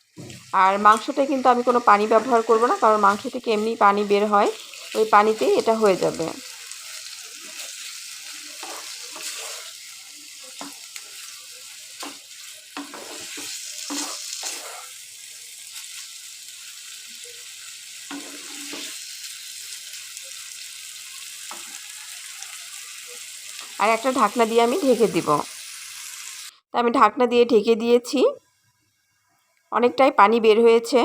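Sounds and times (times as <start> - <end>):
chicken and onions sizzling in oil: 0.0 - 26.5
spatula scraping a pan: 7.0 - 11.4, 12.0 - 15.0, 18.0 - 19.2.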